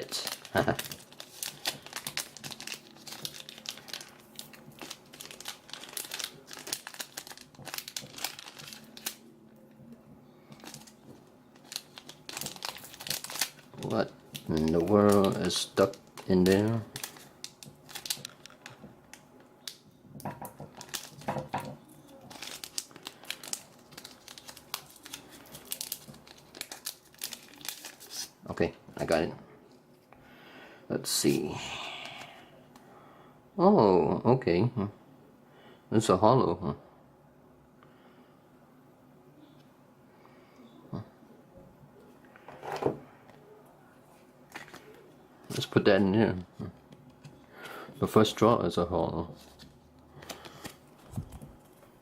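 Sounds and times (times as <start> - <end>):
wrapper crinkling: 0.0 - 9.3, 10.5 - 19.8, 20.4 - 29.2, 44.5 - 45.9, 49.4 - 52.0.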